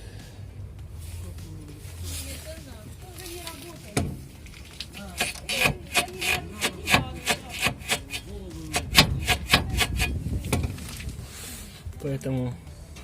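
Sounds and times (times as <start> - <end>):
suspension bushing creaking: 4.1 - 10.9.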